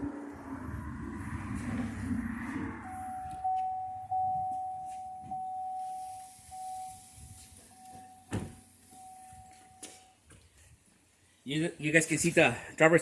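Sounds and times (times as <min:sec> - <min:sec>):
car warning chime: 0:02.8 - 0:10.2.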